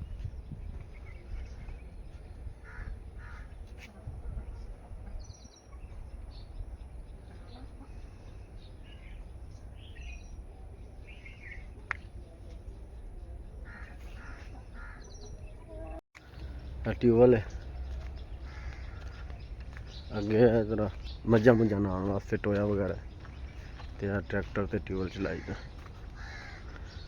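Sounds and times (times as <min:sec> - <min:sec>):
small birds chirping: 0:00.0 - 0:27.0
crows cawing: 0:02.6 - 0:03.6, 0:13.6 - 0:15.1, 0:18.2 - 0:19.4, 0:25.2 - 0:27.0.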